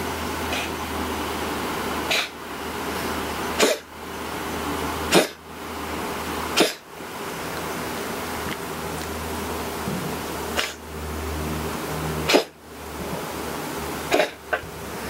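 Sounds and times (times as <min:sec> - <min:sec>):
cat coughing: 0:03.6 - 0:03.8, 0:05.1 - 0:05.4, 0:14.1 - 0:14.4.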